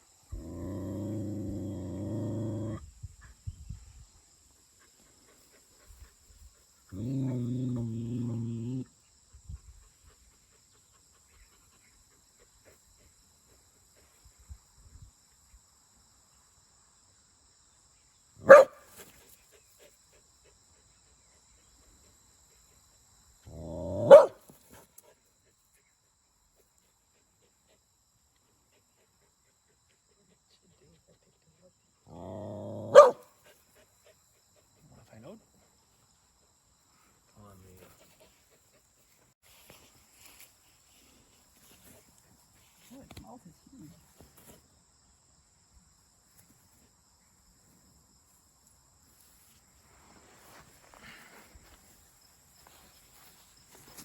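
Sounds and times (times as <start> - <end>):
dog growling: 0.3 - 2.8, 6.9 - 8.9, 23.4 - 24.4, 32.1 - 33.2
dog barking: 18.4 - 18.9, 24.0 - 24.4, 32.8 - 33.3.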